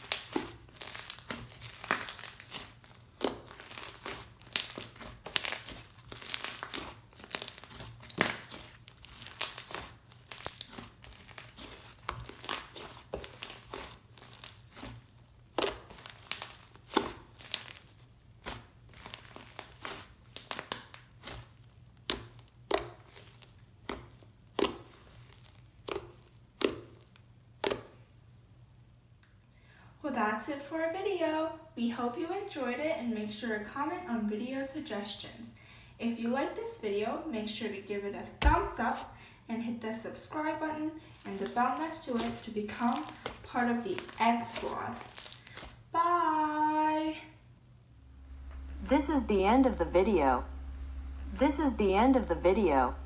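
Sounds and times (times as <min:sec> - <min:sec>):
slime crackling and popping: 0:00.0 - 0:28.3, 0:38.4 - 0:39.2, 0:40.1 - 0:47.0.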